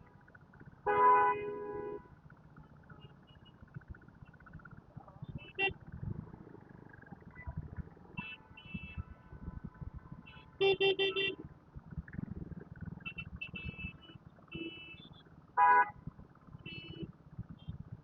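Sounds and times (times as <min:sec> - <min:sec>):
low rumble of engines: 0:00.0 - 0:18.0
vehicle horns honking: 0:00.9 - 0:02.1, 0:05.4 - 0:05.8, 0:10.2 - 0:11.4, 0:13.1 - 0:15.9, 0:16.7 - 0:17.1.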